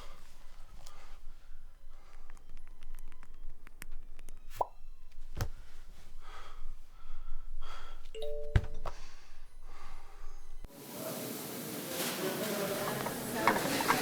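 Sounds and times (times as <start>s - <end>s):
water splashing: 11.0s - 14.0s
dishes clinking: 11.9s - 14.0s
heavy dish knocks: 12.8s - 14.0s.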